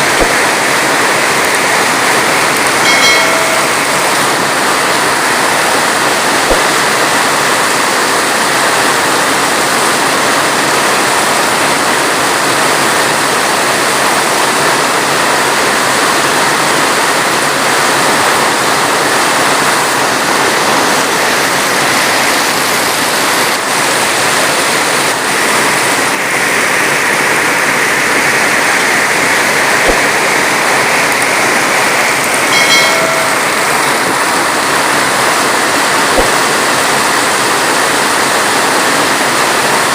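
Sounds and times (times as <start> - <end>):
heavy rain falling: 0.0 - 39.9
brief pitched tone: 2.8 - 4.5, 32.5 - 34.1.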